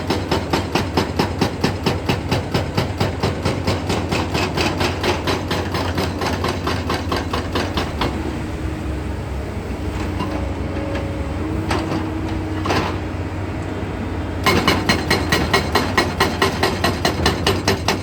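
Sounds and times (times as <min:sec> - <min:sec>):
hydraulic breaker hammering: 0:00.0 - 0:08.2, 0:14.4 - 0:18.0
diesel engine running: 0:05.6 - 0:18.0.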